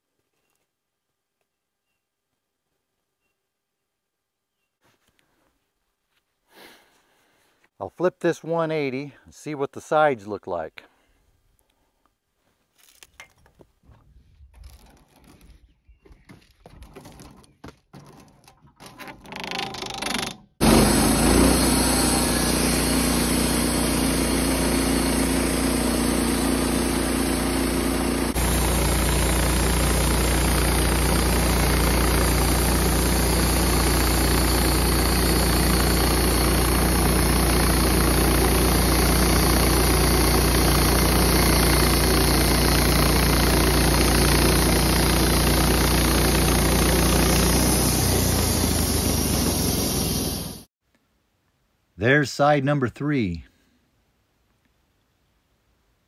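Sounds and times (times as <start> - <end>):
bandsaw mill sawing log: 19.2 - 50.7.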